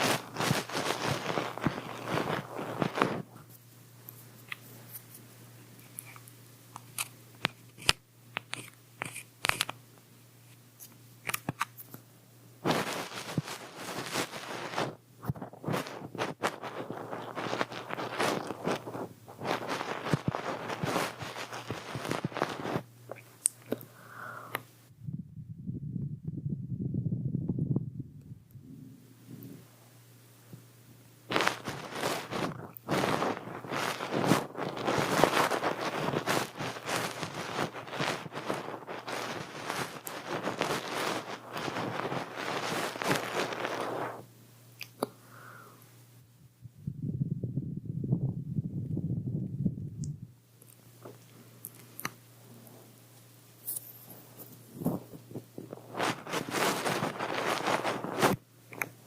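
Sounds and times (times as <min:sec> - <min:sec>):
scratching on microphone: 0:00.0 - 0:03.6, 0:07.7 - 0:09.7, 0:12.6 - 0:23.2, 0:31.3 - 0:44.3, 0:53.6 - 0:58.9
soft low rustling: 0:12.6 - 0:22.9, 0:31.3 - 0:44.3, 0:53.6 - 0:58.4
low rumble: 0:24.9 - 0:29.6, 0:46.4 - 0:50.4.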